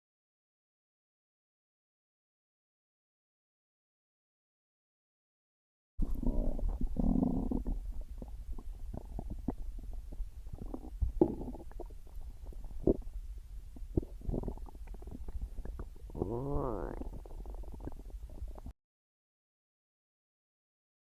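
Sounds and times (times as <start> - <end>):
stomach growling: 6.0 - 18.7.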